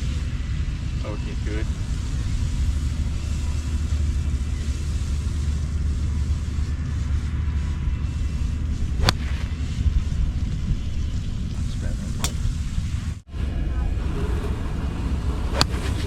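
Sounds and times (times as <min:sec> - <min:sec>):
low rumble: 0:00.0 - 0:16.0
golf club striking ball: 0:09.0 - 0:09.4, 0:12.2 - 0:12.7, 0:15.5 - 0:15.8.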